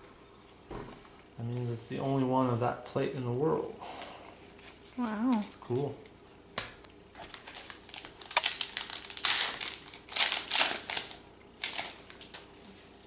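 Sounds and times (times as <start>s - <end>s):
wrapper crinkling: 7.2s - 12.7s.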